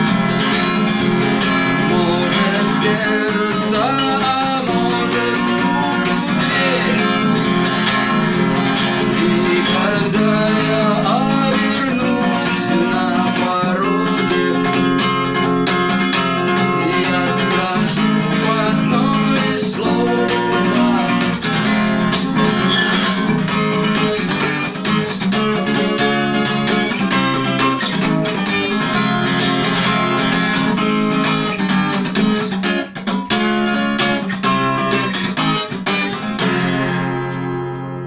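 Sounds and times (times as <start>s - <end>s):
acoustic guitar strumming chords: 0.0s - 38.0s.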